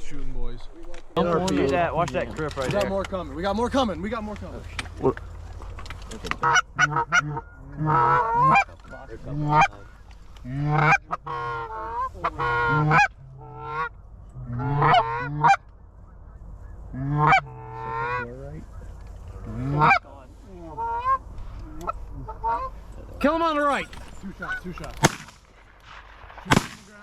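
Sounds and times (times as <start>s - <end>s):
goose honking: 6.3s - 15.7s, 16.8s - 18.7s, 19.3s - 25.4s.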